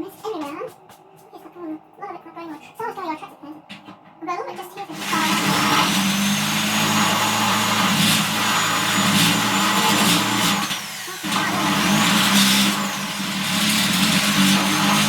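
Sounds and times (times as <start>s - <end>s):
electric drill cutting steel: 4.9s - 15.0s.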